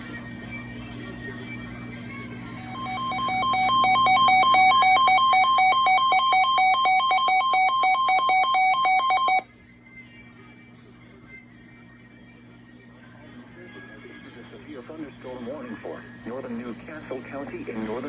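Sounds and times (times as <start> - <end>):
electronic two-tone alert alarm: 2.7 - 9.4.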